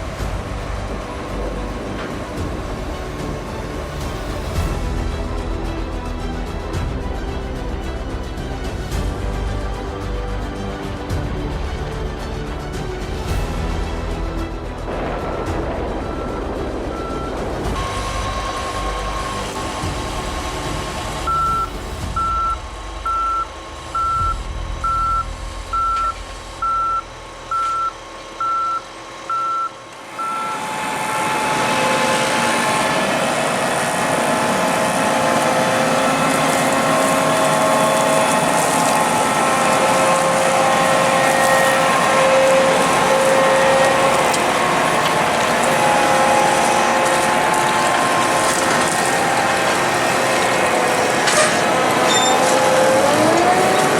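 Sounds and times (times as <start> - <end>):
engine rumble: 0.0 - 53.9
steady mechanical running noise: 0.0 - 53.9
reversing alarm beeping: 15.9 - 19.8, 21.3 - 31.6, 52.1 - 52.5.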